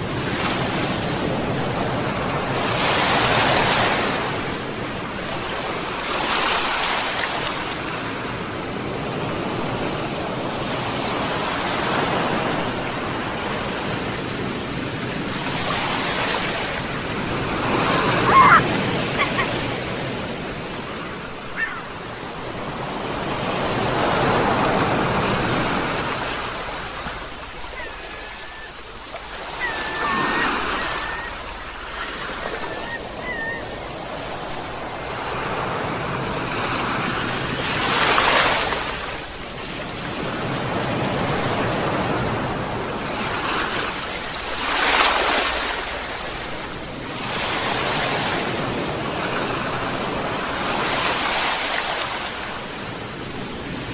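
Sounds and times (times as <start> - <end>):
sea waves washing onto shore: 0.0 - 53.9
seagull cries: 17.7 - 20.0, 21.4 - 22.2, 27.5 - 34.2.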